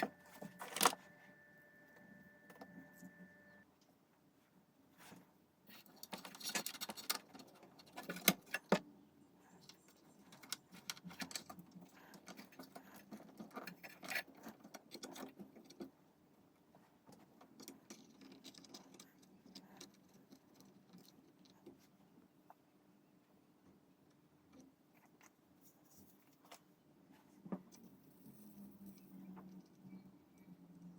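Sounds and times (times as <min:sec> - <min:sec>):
small hard parts clicking and rattling: 0:05.7 - 0:08.8, 0:09.6 - 0:15.9, 0:17.1 - 0:21.8.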